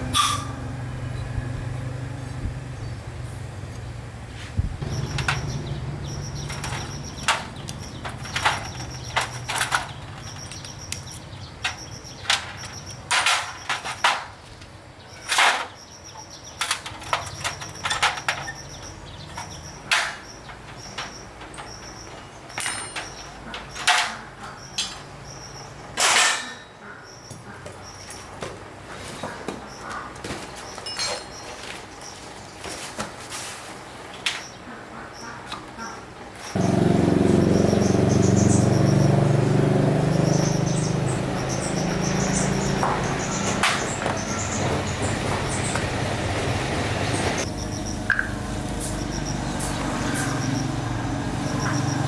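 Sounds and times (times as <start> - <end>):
tools knocking and clacking: 4.8 - 14.4, 15.2 - 25.1, 42.0 - 45.9.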